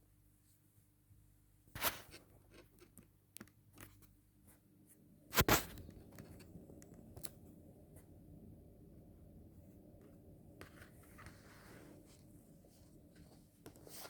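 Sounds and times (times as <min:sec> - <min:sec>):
book pages turning and rustling: 0:10.6 - 0:14.0.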